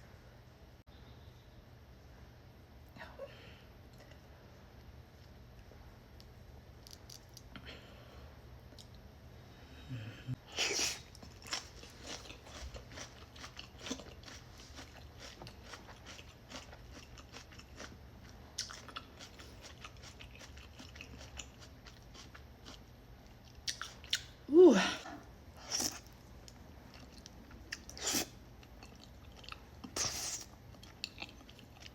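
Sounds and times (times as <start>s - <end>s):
person chewing: 10.7s - 24.3s, 25.6s - 31.9s.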